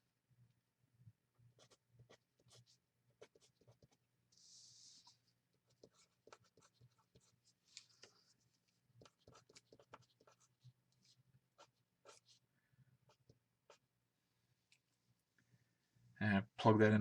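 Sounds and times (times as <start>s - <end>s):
pen writing strokes: 1.6s - 12.4s, 13.1s - 13.8s.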